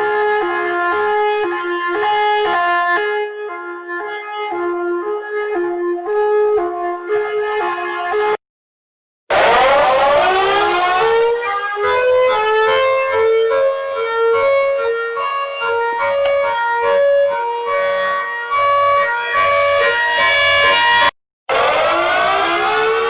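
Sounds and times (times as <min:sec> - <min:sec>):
slow horn-like siren tune: 0:00.0 - 0:08.4, 0:09.3 - 0:23.0
siren tone gliding down: 0:09.3 - 0:23.0.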